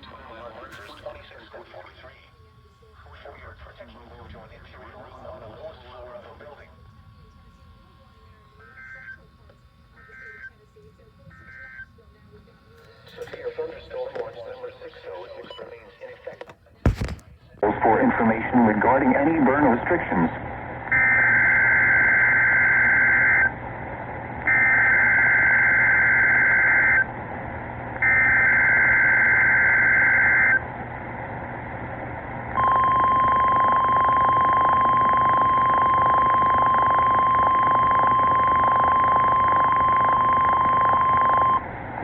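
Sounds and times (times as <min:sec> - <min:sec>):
steady warning alarm tone: 0:00.0 - 0:16.3, 0:32.6 - 0:41.7
radio hiss: 0:00.0 - 0:42.0.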